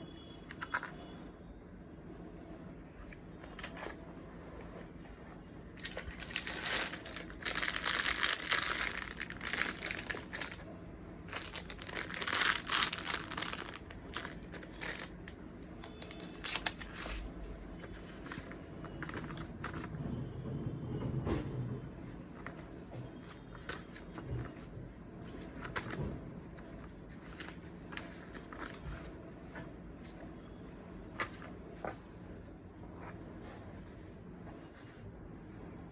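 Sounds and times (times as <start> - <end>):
packaging crinkling and rustling: 5.8 - 10.7, 11.3 - 17.3.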